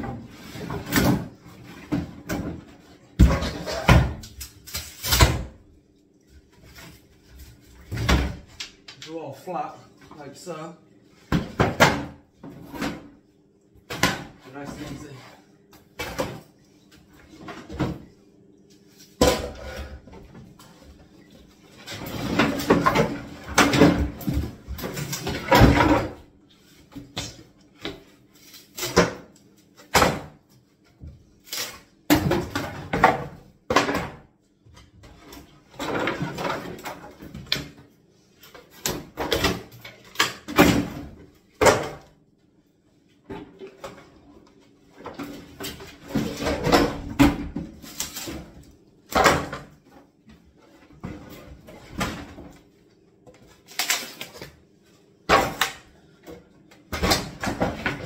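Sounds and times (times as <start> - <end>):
cabinets being knocked apart: 0.0 - 5.6, 7.8 - 8.9, 11.3 - 13.2, 13.8 - 14.9, 21.8 - 26.2, 28.7 - 30.4, 31.0 - 34.3, 35.1 - 37.8, 38.6 - 42.1, 44.9 - 49.9, 50.9 - 52.6, 55.2 - 58.0.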